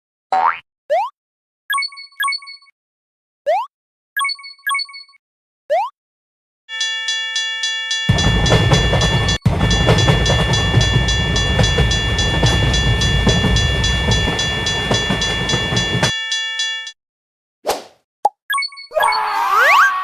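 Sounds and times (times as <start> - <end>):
level crossing bell ringing: 6.7 - 17.0
train running and wheel noise: 8.1 - 16.2.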